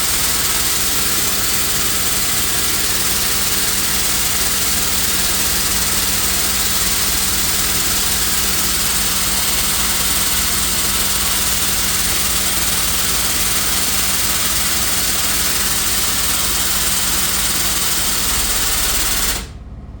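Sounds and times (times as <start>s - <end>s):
hiss of air: 0.0s - 19.6s
air-driven pump chattering: 0.0s - 19.7s.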